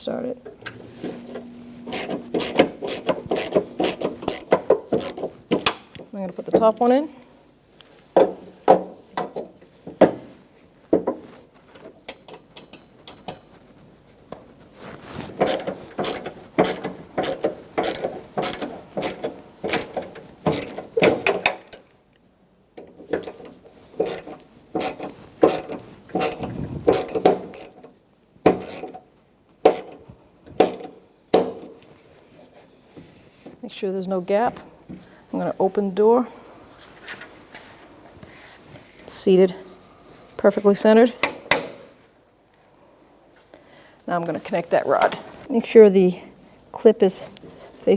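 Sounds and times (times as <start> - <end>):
hand ratchet clicking: 1.8 - 5.8, 15.4 - 21.7, 23.2 - 27.9, 28.5 - 29.0, 29.7 - 30.0, 30.6 - 30.9.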